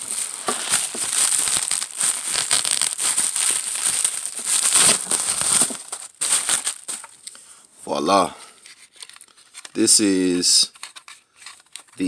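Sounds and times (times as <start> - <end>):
packaging crinkling: 0.0 - 7.4.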